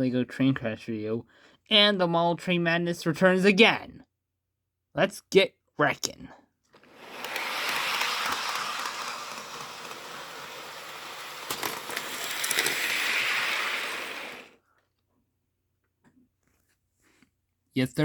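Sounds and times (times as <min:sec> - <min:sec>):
toy train rolling on plastic track: 0:06.8 - 0:14.6.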